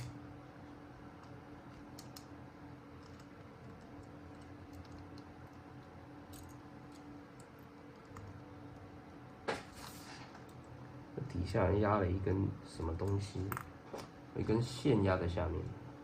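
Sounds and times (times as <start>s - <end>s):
small parts clicking and tapping: 1.1s - 8.9s.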